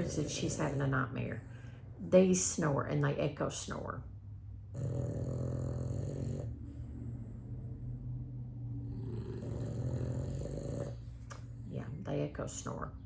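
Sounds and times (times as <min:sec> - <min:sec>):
dogs snoring: 0:00.0 - 0:02.2, 0:04.6 - 0:11.8.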